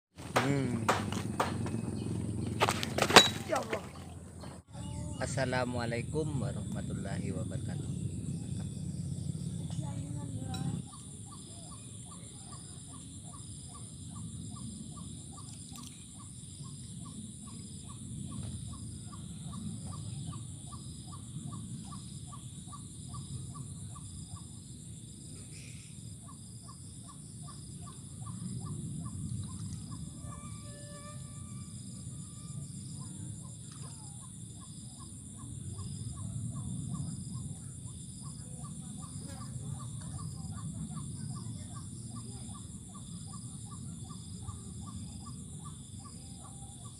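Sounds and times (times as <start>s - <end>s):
high insect drone: 0.2s - 3.8s, 4.6s - 46.9s
rapid insect chirping: 0.3s - 46.9s
low rumble: 3.9s - 10.8s.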